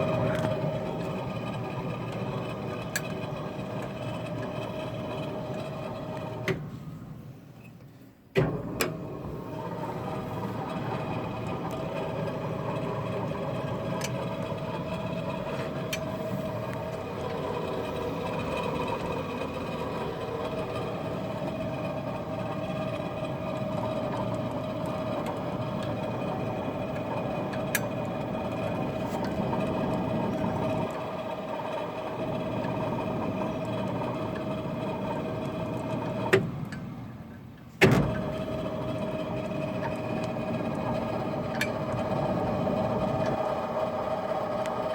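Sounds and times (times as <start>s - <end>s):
washing machine running: 0.0s - 7.4s, 8.4s - 44.9s
motor restarting with a thump: 8.4s - 37.0s, 37.8s - 44.9s.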